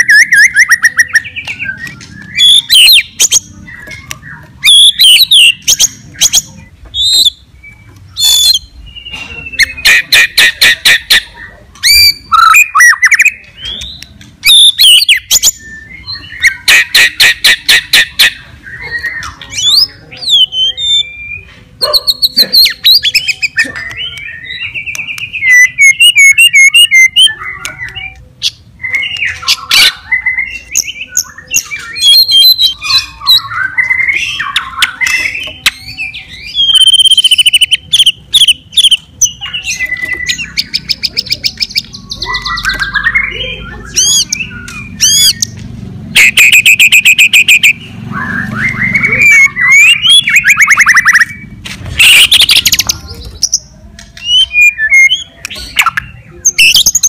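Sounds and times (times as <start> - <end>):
bird singing whistles: 0.0 - 28.2, 28.8 - 45.6, 46.2 - 51.4, 52.0 - 53.6, 54.2 - 57.0.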